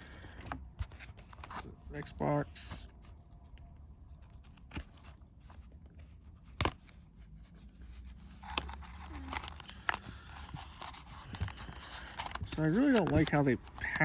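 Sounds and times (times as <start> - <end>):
cardboard and wrapper crinkling: 4.1 - 14.0.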